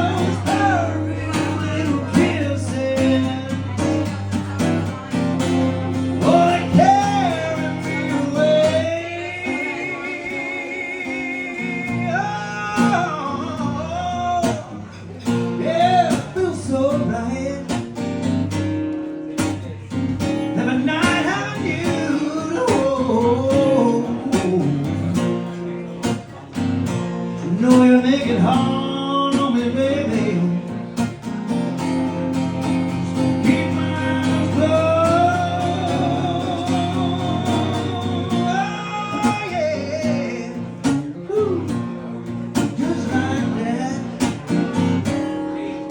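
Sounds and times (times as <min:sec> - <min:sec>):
acoustic guitar strumming: 0:00.0 - 0:45.9
man singing: 0:00.0 - 0:45.9.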